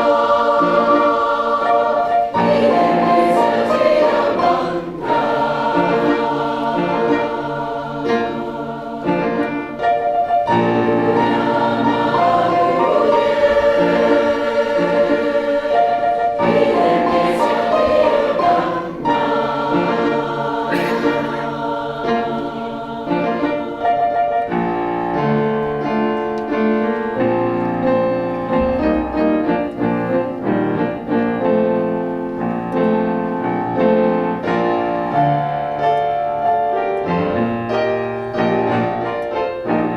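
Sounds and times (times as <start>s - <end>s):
choir singing: 0.0s - 25.5s
piano accompaniment: 0.0s - 39.9s.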